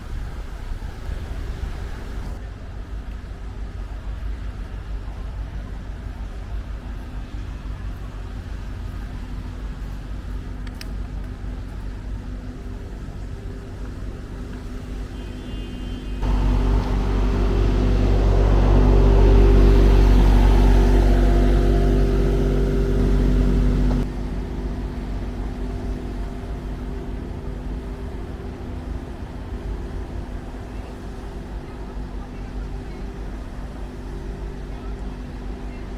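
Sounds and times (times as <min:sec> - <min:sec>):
vehicle engine running: 0:16.2 - 0:35.4.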